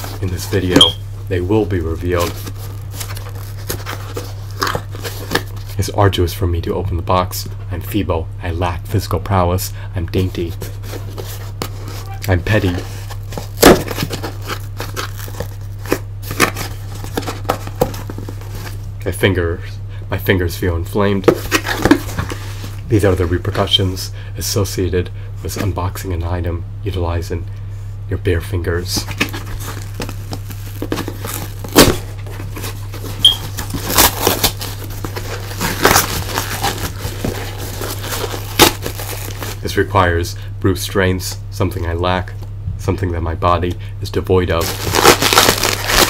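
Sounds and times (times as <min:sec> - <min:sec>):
cardboard box being torn open: 0:12.6 - 0:18.7, 0:29.1 - 0:39.6, 0:44.6 - 0:46.0.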